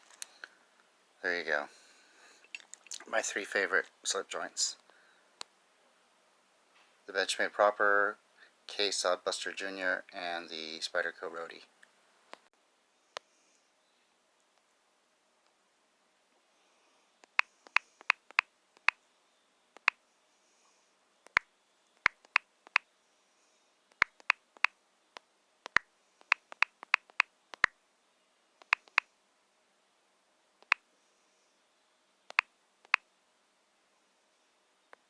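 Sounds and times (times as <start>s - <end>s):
sharp short clicks: 21.2s - 22.8s, 23.9s - 24.8s, 25.6s - 27.7s, 28.6s - 29.1s.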